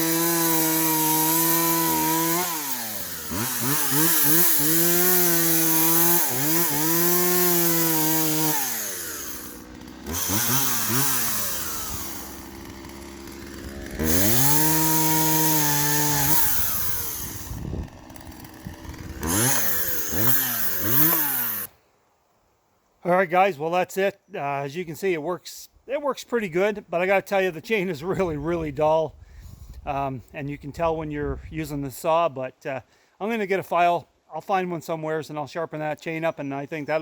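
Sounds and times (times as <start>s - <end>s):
chainsaw revving and idling: 0.0s - 21.7s.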